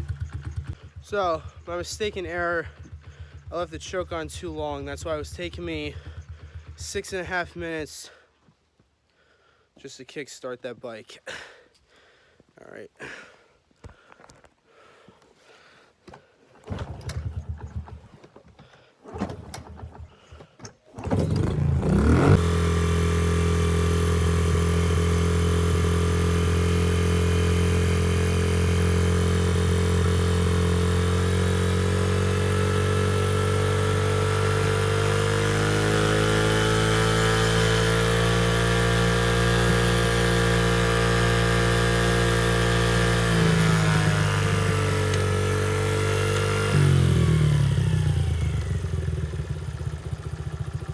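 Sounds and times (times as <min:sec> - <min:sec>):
small motorcycle engine running: 0:00.0 - 0:07.6, 0:16.7 - 0:18.1, 0:21.0 - 0:50.9.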